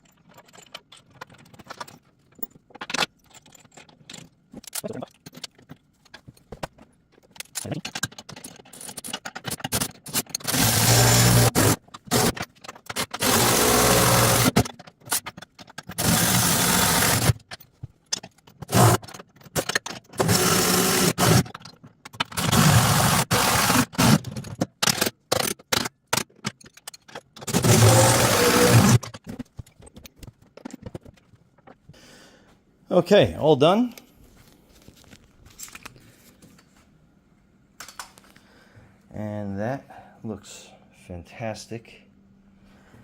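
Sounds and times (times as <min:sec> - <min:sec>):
wrench tightening nuts: 0:07.4 - 0:29.2.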